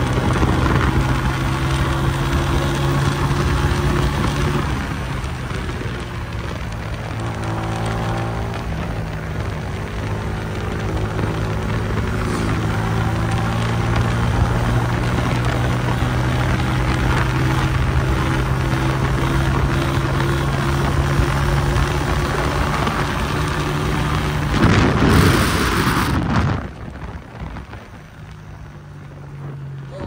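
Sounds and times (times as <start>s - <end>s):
motorcycle engine cruising: 0.0s - 30.0s
loud rushing noise: 11.7s - 14.3s, 21.8s - 27.6s.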